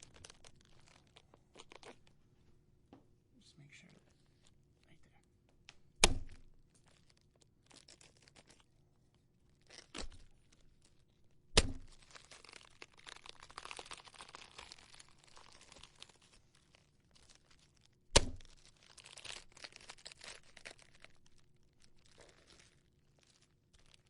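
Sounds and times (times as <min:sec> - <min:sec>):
crackling and tearing: 0:00.0 - 0:02.2, 0:06.0 - 0:24.0
hammer striking crunchy object: 0:06.0 - 0:06.4, 0:11.5 - 0:11.9, 0:18.1 - 0:18.5.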